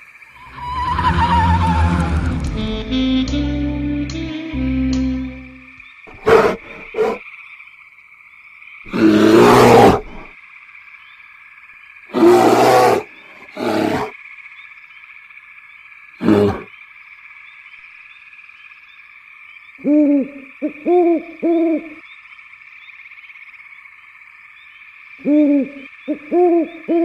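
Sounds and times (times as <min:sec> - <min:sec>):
rough animal roars: 0:00.4 - 0:02.5, 0:08.9 - 0:10.3, 0:12.1 - 0:14.1, 0:16.2 - 0:16.7
high background drone: 0:00.4 - 0:05.8.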